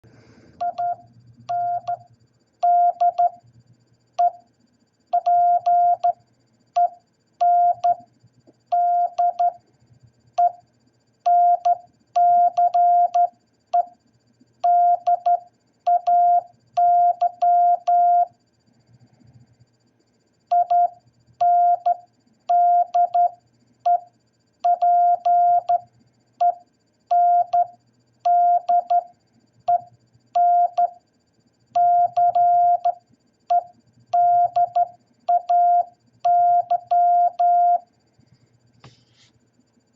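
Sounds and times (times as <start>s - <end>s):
morse code beeps: 0.6s - 2.0s, 2.6s - 3.4s, 5.2s - 6.2s, 6.8s - 8.0s, 11.3s - 13.9s, 14.7s - 18.3s, 20.5s - 24.0s, 24.7s - 25.8s, 26.4s - 27.7s, 28.3s - 29.1s, 29.7s - 31.0s, 31.8s - 37.8s.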